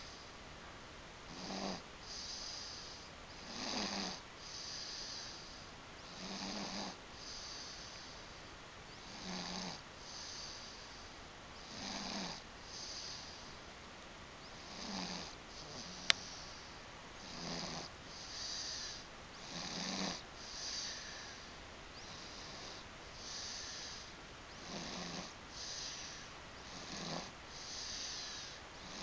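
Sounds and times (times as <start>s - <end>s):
soft airy breaths: 0.0s - 29.0s
person snoring: 1.3s - 5.4s, 6.1s - 7.9s, 9.0s - 10.6s, 11.6s - 13.4s, 14.7s - 16.6s, 17.2s - 29.0s.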